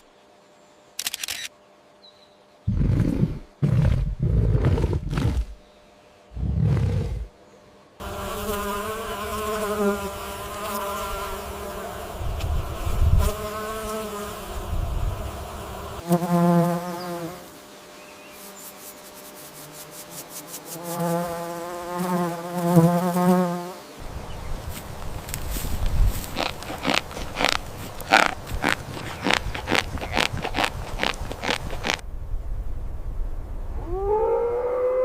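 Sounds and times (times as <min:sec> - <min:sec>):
flying insect buzzing: 0:08.0 - 0:32.0.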